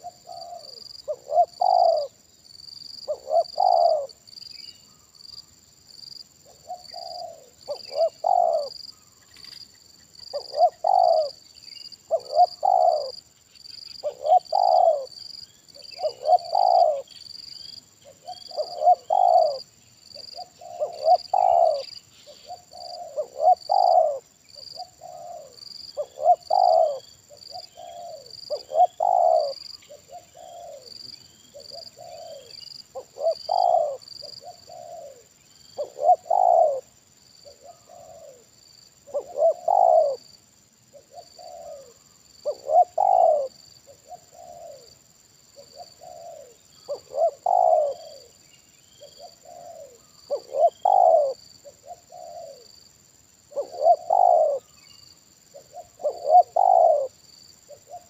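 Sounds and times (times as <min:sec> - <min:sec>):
doves cooing: 0:00.0 - 0:02.2, 0:03.1 - 0:04.2, 0:06.5 - 0:09.6, 0:10.3 - 0:11.4, 0:12.1 - 0:13.2, 0:14.0 - 0:15.2, 0:15.8 - 0:17.2, 0:18.0 - 0:40.2, 0:40.9 - 0:44.9, 0:45.6 - 0:48.4, 0:49.0 - 0:52.7, 0:53.5 - 0:54.9, 0:55.5 - 0:58.0.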